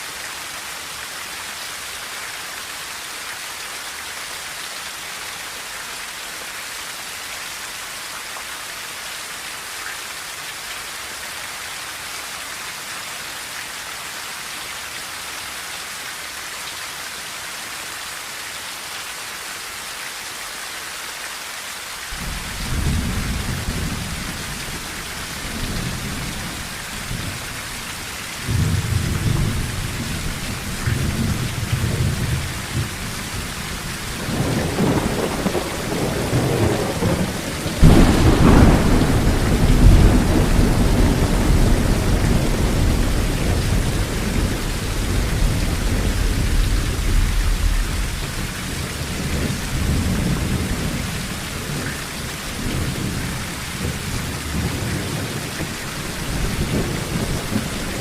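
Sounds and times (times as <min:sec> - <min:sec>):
rain on a tin roof: 0:00.0 - 0:58.0
thunder rumbling: 0:22.2 - 0:51.8, 0:52.5 - 0:58.0.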